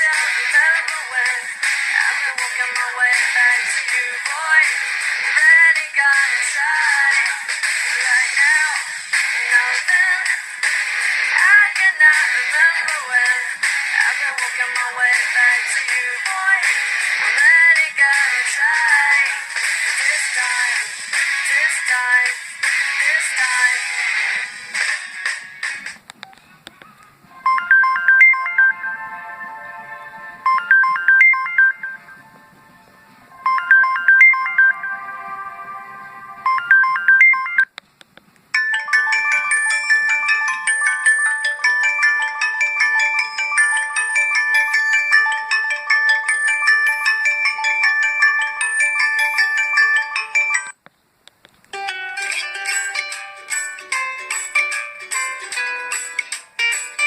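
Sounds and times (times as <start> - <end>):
electronic ringtone melody: 27.4 - 32.4, 33.4 - 37.7, 38.5 - 50.8, 51.8 - 57.0.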